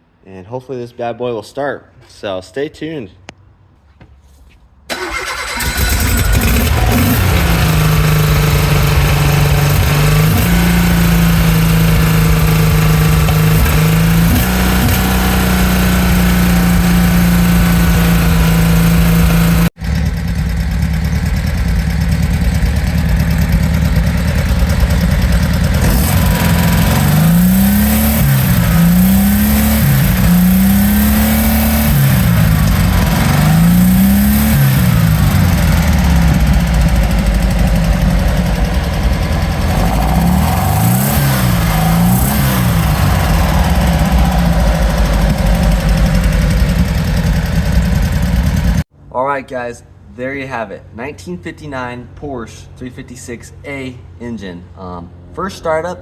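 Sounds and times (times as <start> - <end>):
air-cooled engine idling and revving: 4.9 - 48.9.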